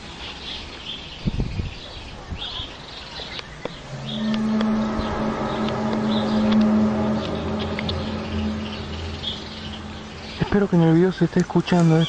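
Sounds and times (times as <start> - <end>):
low trumpet-like drone: 3.7 - 11.4.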